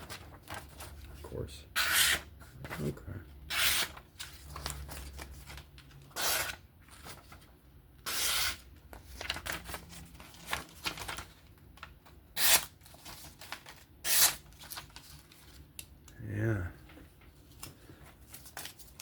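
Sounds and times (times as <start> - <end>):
scratchy paper rustles: 3.8 - 7.5, 8.9 - 11.9
knife slicing paper: 8.0 - 8.6, 12.4 - 12.7, 14.0 - 14.8.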